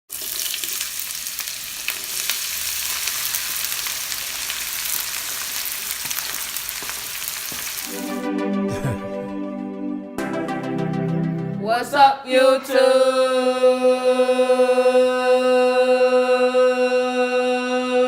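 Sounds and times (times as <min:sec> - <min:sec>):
food sizzling in a pan: 0:00.1 - 0:08.2
music: 0:07.9 - 0:18.0.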